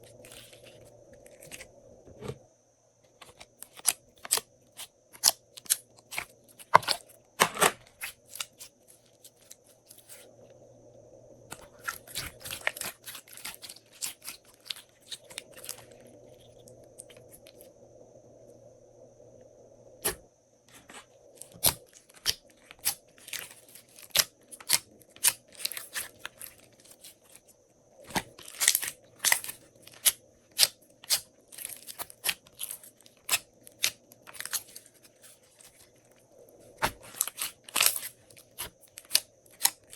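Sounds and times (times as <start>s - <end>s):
sticky slime clicks and crackles: 36.8s - 39.9s.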